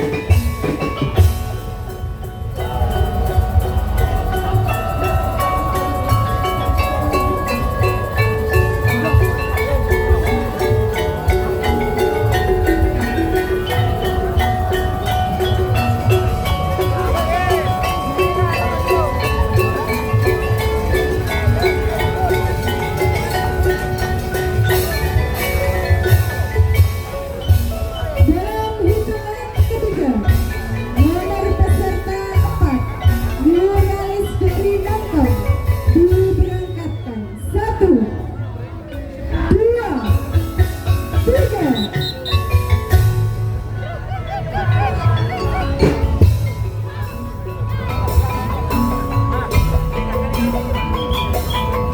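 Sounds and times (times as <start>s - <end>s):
heavy low beat: 0.0s - 36.6s, 39.4s - 51.9s
bamboo percussion ensemble: 0.0s - 51.9s
gliding sung melody: 1.5s - 35.2s.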